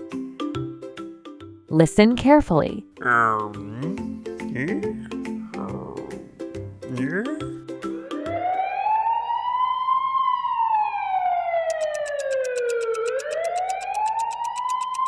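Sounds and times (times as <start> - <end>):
police siren wailing: 8.4 - 11.6
fast even ticking: 11.7 - 15.0.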